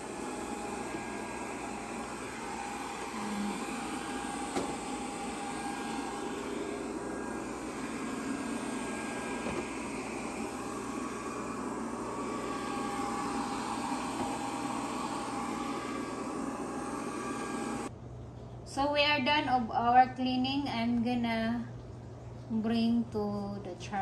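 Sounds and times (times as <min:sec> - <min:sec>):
robot vacuum whirring: 0:00.0 - 0:17.9.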